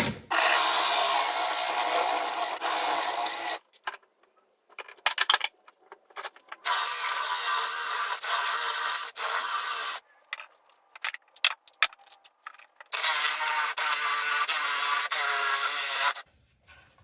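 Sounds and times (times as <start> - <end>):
workpieces clicking and knocking: 3.6 - 9.2, 10.0 - 14.5.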